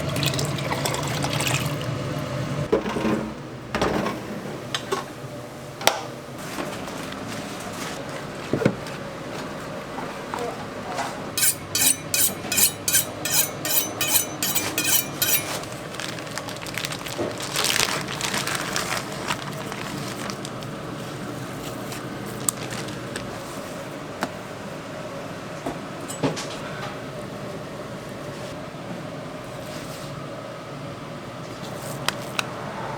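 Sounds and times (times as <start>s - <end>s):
utensil strokes: 11.4s - 15.7s.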